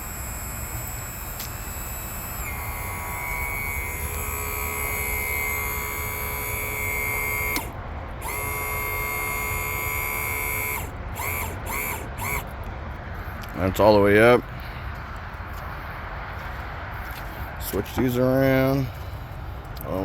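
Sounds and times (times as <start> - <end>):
electric pump motor whining: 0.0 - 12.6.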